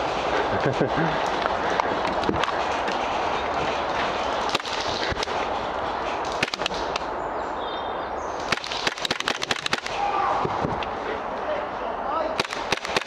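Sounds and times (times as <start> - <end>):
steady noisy background: 0.0 - 13.0
airsoft guns firing: 8.4 - 10.2, 12.4 - 13.0.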